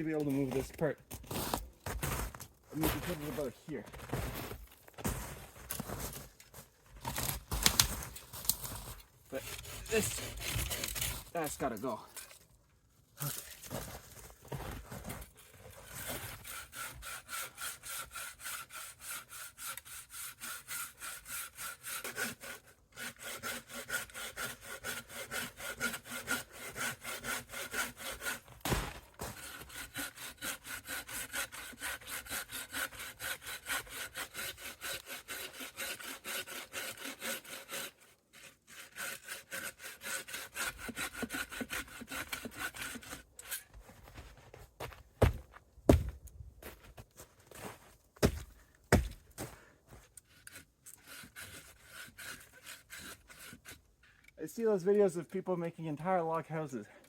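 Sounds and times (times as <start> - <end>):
handsaw cutting wood: 3.0 - 3.5, 9.3 - 12.0, 15.6 - 43.7, 48.2 - 49.2, 50.2 - 53.9.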